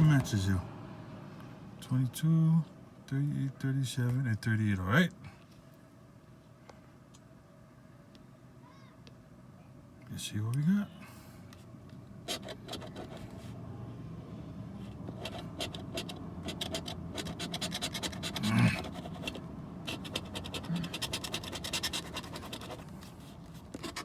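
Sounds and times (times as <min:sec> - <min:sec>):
scratch-off ticket being scratched: 0:12.3 - 0:13.4, 0:14.9 - 0:24.0.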